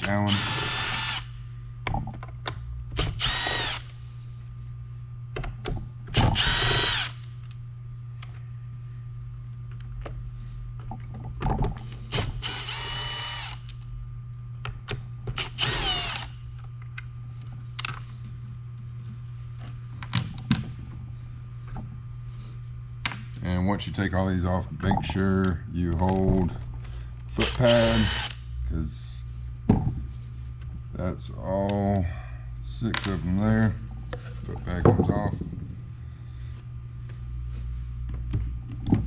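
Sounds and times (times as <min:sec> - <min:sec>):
low hum: 0:00.0 - 0:39.0
cordless drill whining: 0:00.3 - 0:01.3, 0:03.0 - 0:03.9, 0:06.2 - 0:07.3, 0:12.1 - 0:13.6, 0:15.4 - 0:16.4, 0:27.4 - 0:28.4.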